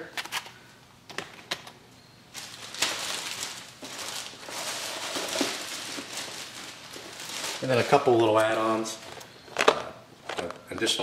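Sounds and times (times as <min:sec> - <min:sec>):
packaging rustling and crinkling: 0:02.3 - 0:11.0.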